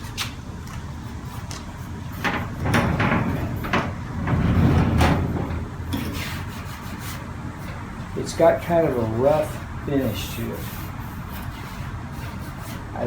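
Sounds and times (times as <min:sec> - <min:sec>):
clunks and knocks: 0:01.5 - 0:08.2
metal tool chest rumbling: 0:02.0 - 0:09.6.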